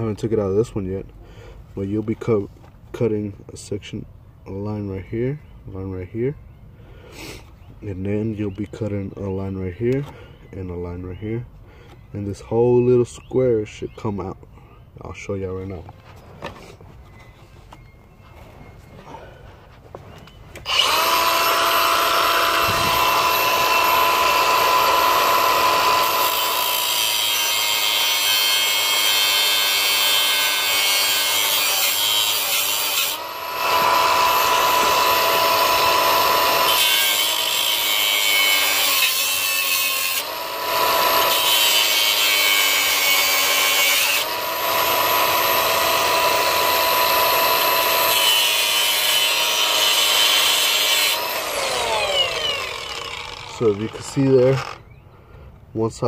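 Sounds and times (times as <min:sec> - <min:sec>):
power tool cutting plastic: 0:20.6 - 0:54.9.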